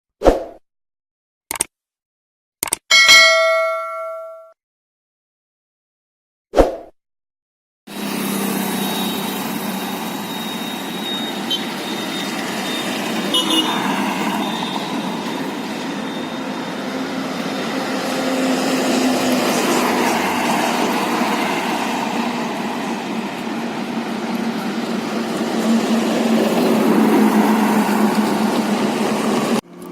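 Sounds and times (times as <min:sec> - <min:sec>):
short clicks: 0:01.5 - 0:01.8, 0:02.6 - 0:02.8.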